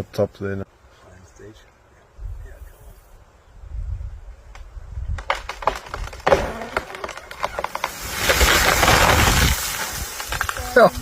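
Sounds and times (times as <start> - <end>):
tree trunk cracking and splintering: 5.1 - 11.0
crash of branches and leaves: 5.2 - 11.0.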